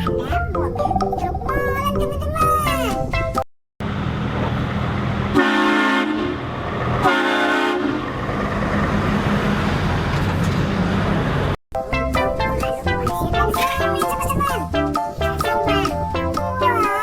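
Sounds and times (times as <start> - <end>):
low engine rumble: 3.8 - 17.0
vehicle air horn blasts: 5.3 - 6.4, 7.0 - 8.0.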